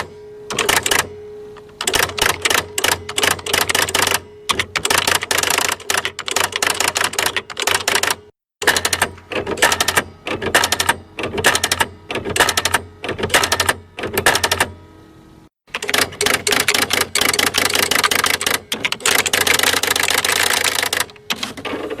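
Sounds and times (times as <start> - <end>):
typewriter motor humming: 0.0 - 14.8, 15.7 - 22.0
typewriter keys clacking: 0.5 - 1.1, 1.8 - 14.7, 15.7 - 21.6.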